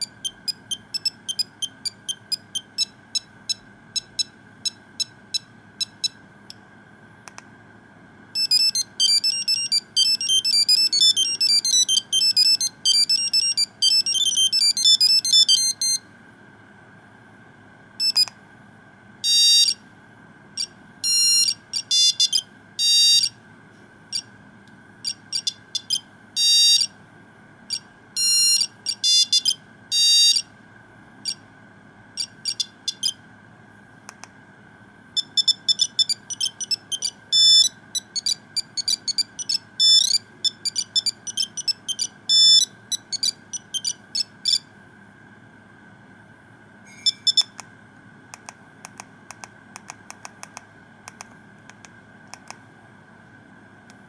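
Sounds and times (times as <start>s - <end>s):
monophonic phone ringtone: 8.4s - 16.0s, 35.2s - 44.6s.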